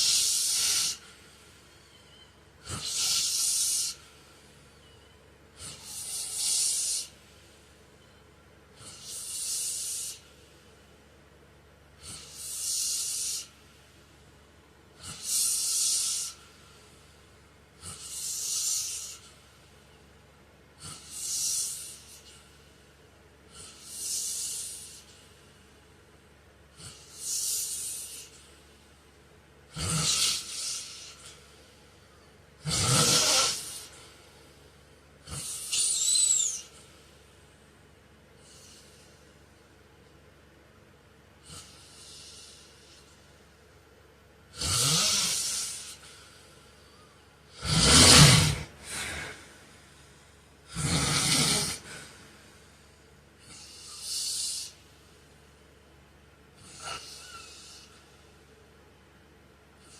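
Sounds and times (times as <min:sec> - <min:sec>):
man snoring: 0:00.0 - 0:01.1, 0:02.6 - 0:04.0, 0:05.6 - 0:07.1, 0:15.0 - 0:16.4, 0:17.8 - 0:19.2, 0:29.7 - 0:31.1, 0:32.6 - 0:34.2, 0:44.5 - 0:46.0, 0:47.5 - 0:49.4, 0:50.7 - 0:52.1.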